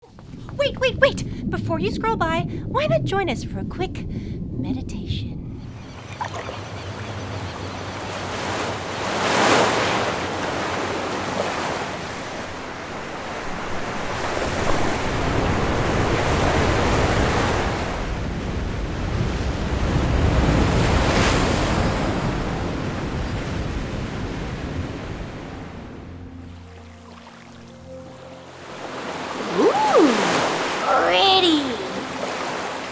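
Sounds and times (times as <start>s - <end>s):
waves breaking on shore: 5.7s - 32.9s.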